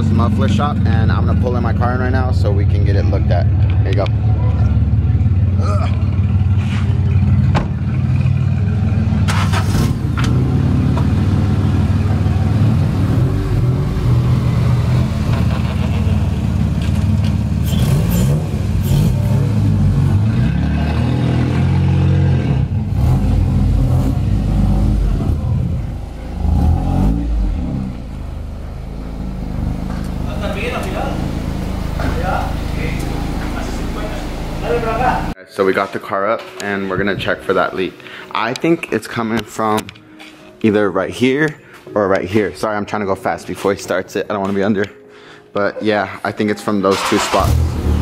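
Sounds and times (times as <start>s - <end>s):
car engine running low speed: 0.0s - 35.4s.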